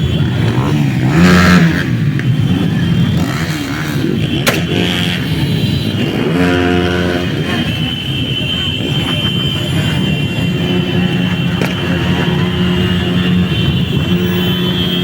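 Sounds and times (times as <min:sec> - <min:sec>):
motorcycle engines revving: 0:00.0 - 0:15.0
sharp crack: 0:04.4 - 0:04.8.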